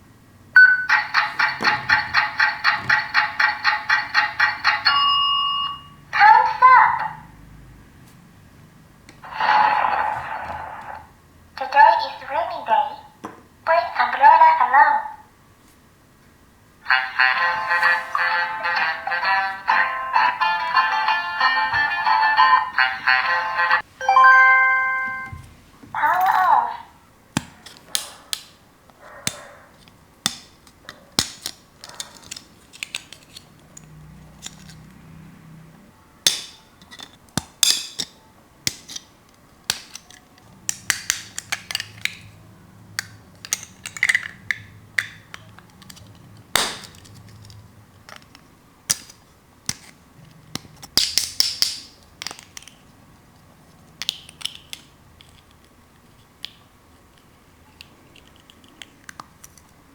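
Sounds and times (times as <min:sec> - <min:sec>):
plastic toy pieces clicking: 0:29.8 - 0:34.8, 0:36.3 - 0:42.4, 0:43.0 - 0:52.9, 0:54.0 - 0:59.8.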